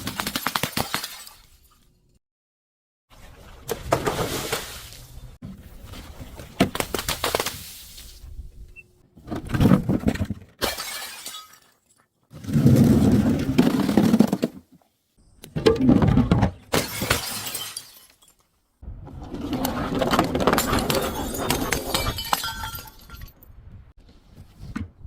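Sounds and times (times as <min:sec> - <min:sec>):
glass crushing and shattering: 0:10.6 - 0:12.1, 0:16.7 - 0:18.5, 0:20.4 - 0:23.4.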